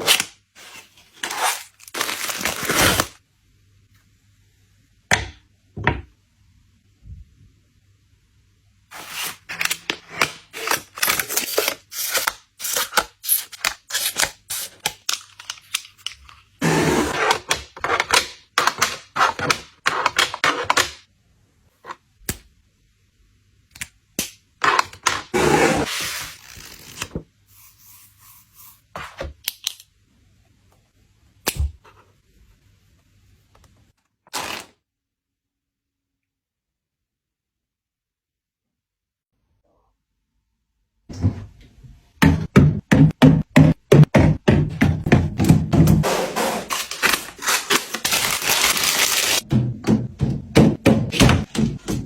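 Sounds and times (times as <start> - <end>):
packaging clicks and rustles: 1.1 - 3.1, 9.0 - 16.6, 46.6 - 49.4.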